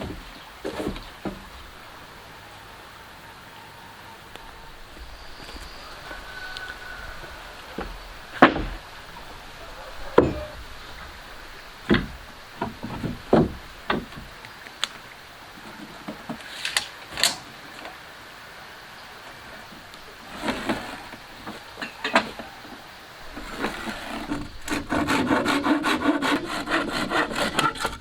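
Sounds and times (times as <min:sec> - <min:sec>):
wood knocking against wood: 0:07.8 - 0:08.8, 0:10.2 - 0:10.5, 0:11.9 - 0:14.4.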